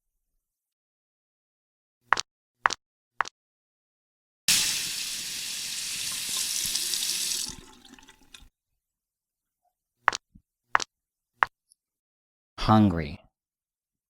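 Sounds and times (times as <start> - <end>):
tap water running into sink: 4.5 - 8.5.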